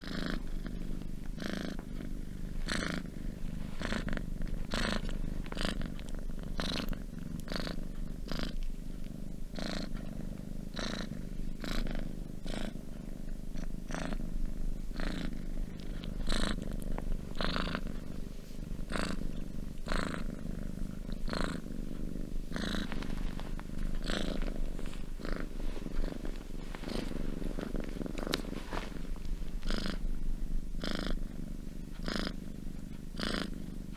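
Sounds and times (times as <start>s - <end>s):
cat purring: 0.0s - 33.9s
cat breathing rasp: 15.8s - 29.9s.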